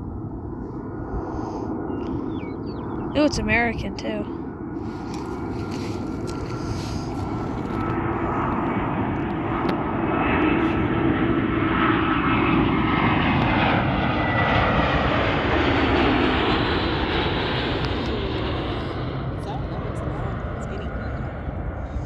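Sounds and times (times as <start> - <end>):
jet airliner passing: 0.0 - 22.0.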